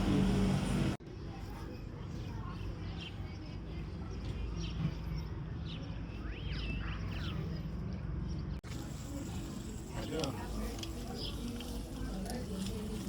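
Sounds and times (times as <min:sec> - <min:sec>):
low outdoor rumble: 0:00.0 - 0:01.0.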